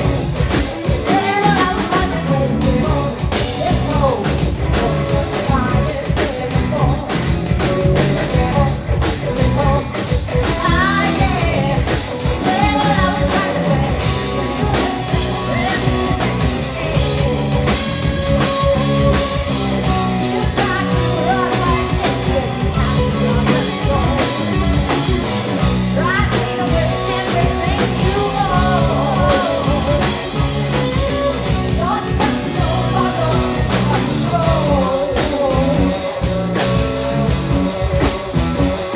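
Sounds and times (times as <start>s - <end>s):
person singing: 0.0s - 38.9s
rock band playing live: 0.0s - 38.9s
drum beat: 26.8s - 38.9s.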